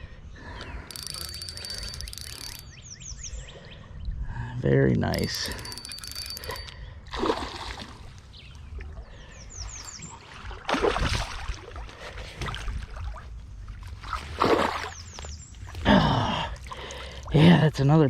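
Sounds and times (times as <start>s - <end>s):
low rumble of moving water: 6.8s - 17.8s.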